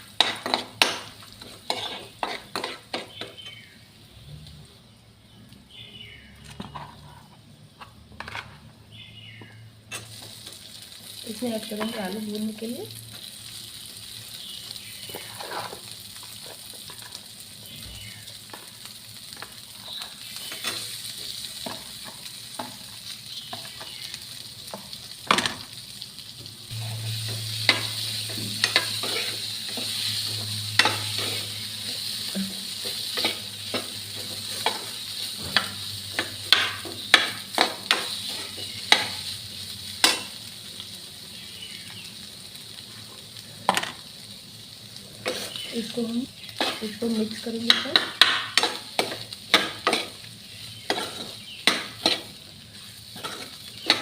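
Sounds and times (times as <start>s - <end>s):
spoon scraping a pan: 0.0s - 3.7s, 6.4s - 8.7s, 9.9s - 10.4s, 15.0s - 17.2s, 26.8s - 39.3s, 45.2s - 54.0s
potatoes sizzling in oil: 0.0s - 54.0s.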